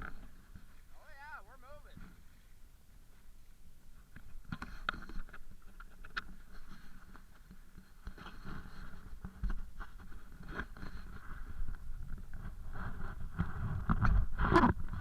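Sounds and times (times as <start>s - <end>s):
wind rumble on microphone: 3.8s - 15.0s.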